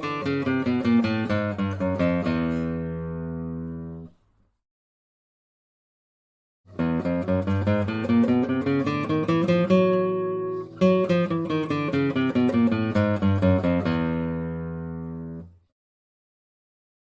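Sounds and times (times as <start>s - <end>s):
acoustic guitar picking: 0.0s - 4.1s, 6.7s - 15.6s.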